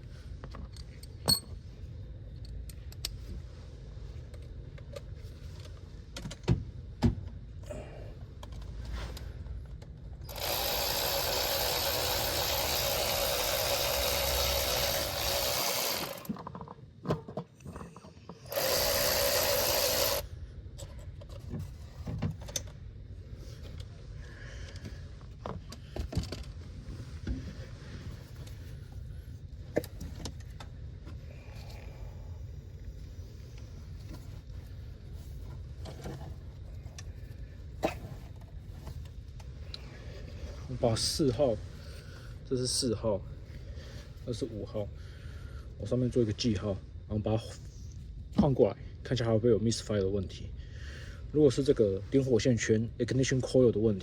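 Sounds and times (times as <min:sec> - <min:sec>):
low steady hum: 0:00.0 - 0:54.0
power tool running: 0:10.3 - 0:16.4, 0:18.5 - 0:20.3.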